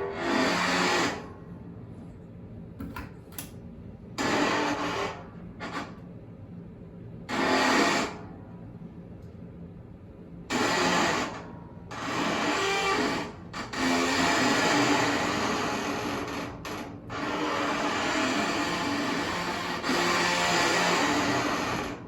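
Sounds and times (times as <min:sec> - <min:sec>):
steady low hum: 0:01.0 - 0:04.2, 0:08.1 - 0:10.5
dishwasher mechanical noise: 0:02.8 - 0:03.6.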